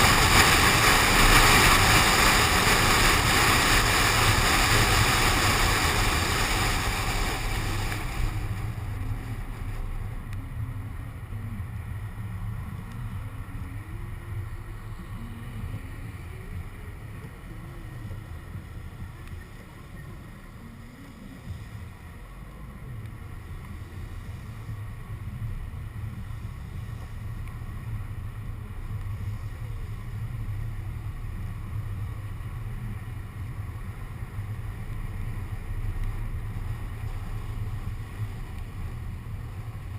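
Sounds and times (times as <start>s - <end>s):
tyre hiss on wet road: 0.0s - 10.2s, 23.2s - 39.9s
road and wind rumble: 0.0s - 39.9s.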